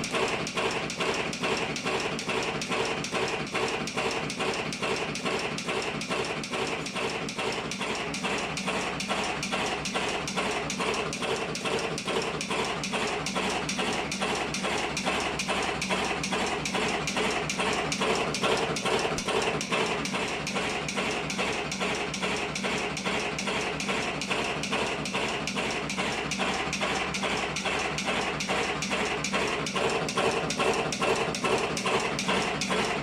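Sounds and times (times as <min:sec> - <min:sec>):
machine constant hum: 0:00.0 - 0:33.0
machine rapid mechanical clicks: 0:00.0 - 0:33.0.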